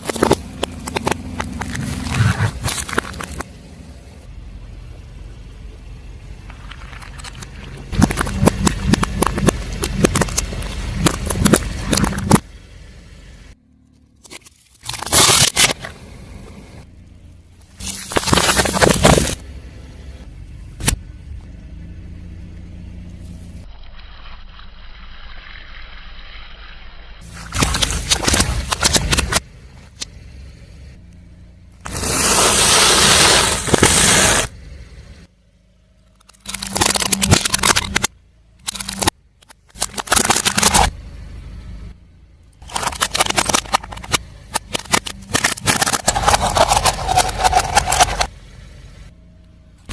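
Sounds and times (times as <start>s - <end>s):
tyre crushing crunchy objects: 0.0s - 3.5s, 6.5s - 12.5s, 14.2s - 16.0s, 17.7s - 19.4s, 27.2s - 29.4s, 31.9s - 34.5s, 36.3s - 38.1s, 38.7s - 41.0s, 42.6s - 48.3s
car low running hum: 0.0s - 24.1s, 27.2s - 49.9s
rushing grinding noise: 42.6s - 48.3s.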